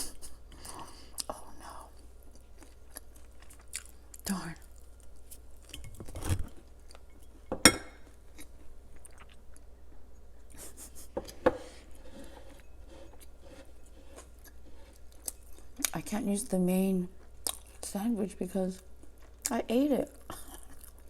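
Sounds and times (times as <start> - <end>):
chewing and crunching food: 0.5 - 7.4, 8.0 - 10.6, 17.1 - 17.9, 18.9 - 21.0.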